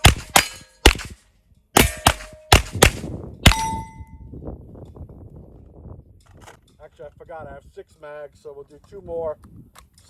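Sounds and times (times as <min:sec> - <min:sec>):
rimfire rifle shots: 0:00.0 - 0:01.2, 0:01.8 - 0:03.8
steel plates ringing: 0:03.5 - 0:04.2.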